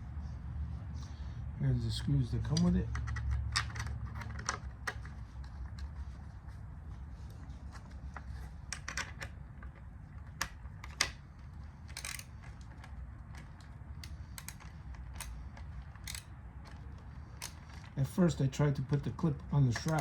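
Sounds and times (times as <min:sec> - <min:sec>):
screws and brackets rattling: 0:11.8 - 0:18.0, 0:19.8 - 0:20.0.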